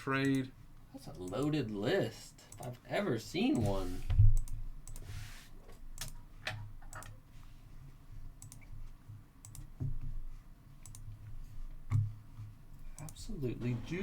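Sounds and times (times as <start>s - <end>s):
keyboard and mouse clicks: 3.6s - 5.1s, 5.9s - 7.2s, 8.4s - 8.7s, 9.4s - 10.0s, 10.8s - 11.2s, 13.0s - 13.2s.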